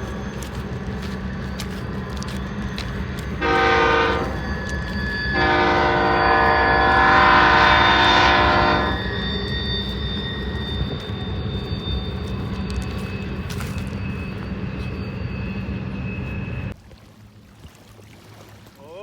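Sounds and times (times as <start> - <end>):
locomotive air horn blasts: 3.4 - 9.5.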